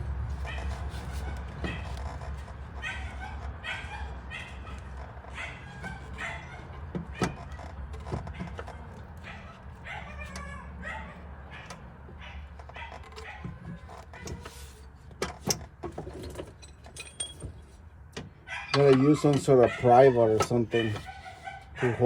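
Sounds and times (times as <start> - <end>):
dog whining and yipping: 2.8 - 7.6, 8.3 - 14.5, 18.4 - 22.0.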